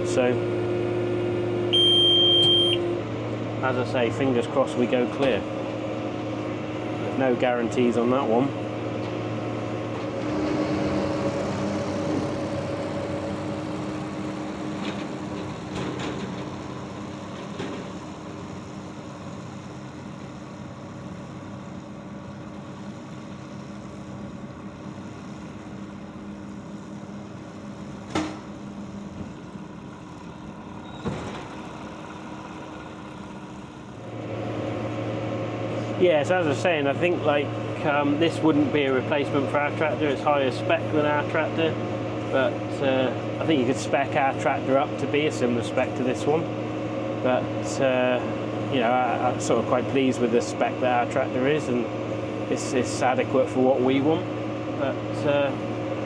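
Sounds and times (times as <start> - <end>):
tractor engine running: 0.0 - 56.0.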